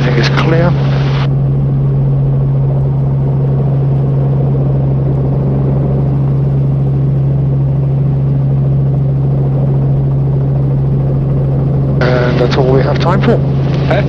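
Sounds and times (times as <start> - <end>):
helicopter rotor and engine drone: 0.0 - 14.0.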